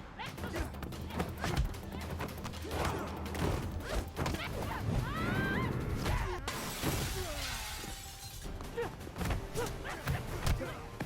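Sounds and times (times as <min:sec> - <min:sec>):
movie music: 0:00.0 - 0:11.0
crash with glass shattering: 0:06.5 - 0:08.4.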